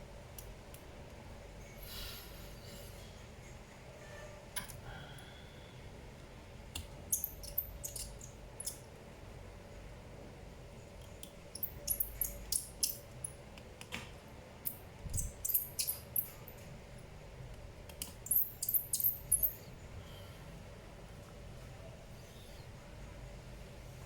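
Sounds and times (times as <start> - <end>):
clicks of tools and small parts: 11.0 - 14.0, 17.9 - 19.6.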